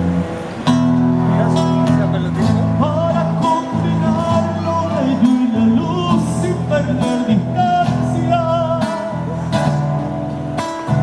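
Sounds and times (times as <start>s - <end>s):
guitar-backed ballad: 0.0s - 11.0s
steady bass notes: 0.0s - 11.0s.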